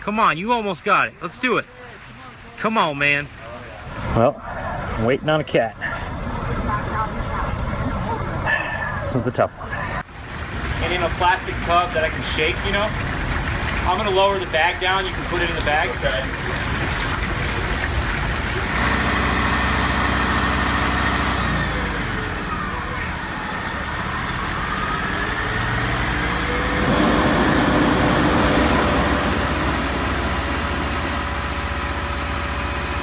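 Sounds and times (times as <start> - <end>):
fire truck engine running: 10.0 - 33.0.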